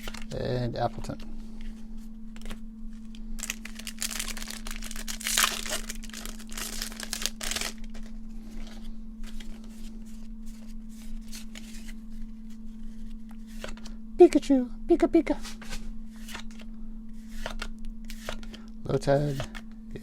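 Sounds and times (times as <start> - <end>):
cards being handled: 1.0 - 14.0, 15.4 - 19.7
foil wrapper tearing and crinkling: 3.4 - 8.1.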